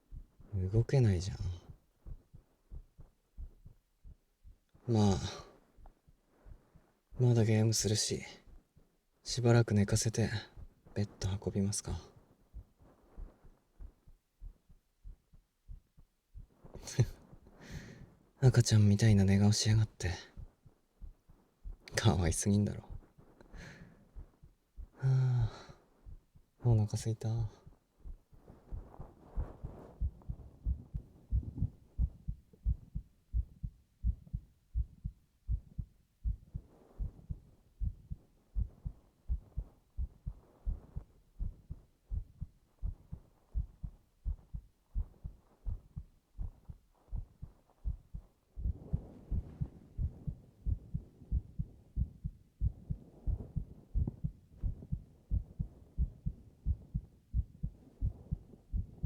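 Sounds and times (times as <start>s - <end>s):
heartbeat thumps: 0.0s - 7.3s, 8.3s - 26.6s, 27.4s - 59.0s.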